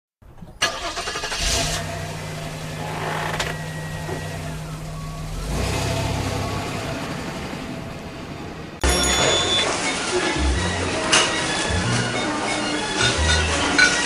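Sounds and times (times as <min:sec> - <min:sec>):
vehicle engine running: 0:01.3 - 0:09.6.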